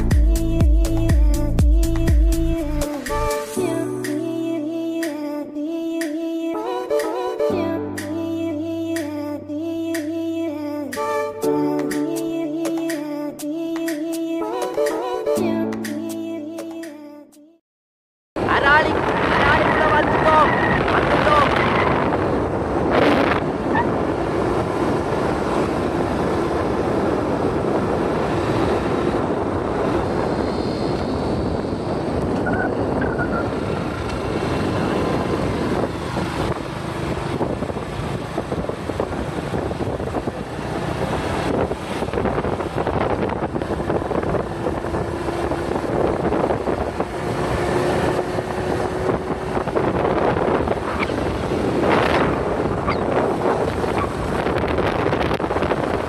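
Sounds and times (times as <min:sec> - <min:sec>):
road noise: 0:00.0 - 0:16.0, 0:18.4 - 0:56.0
wind buffeting microphone: 0:18.4 - 0:56.0
motorcycle engine running: 0:32.5 - 0:56.0.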